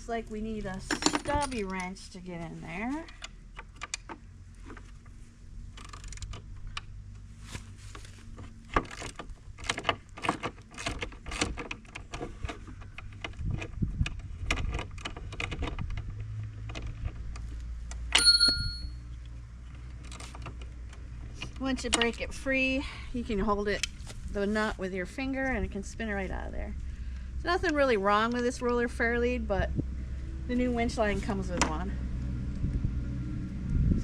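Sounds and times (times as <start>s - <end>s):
wrench clinking on metal: 18.1s - 19.0s
ringing metallic ping: 18.2s - 19.0s.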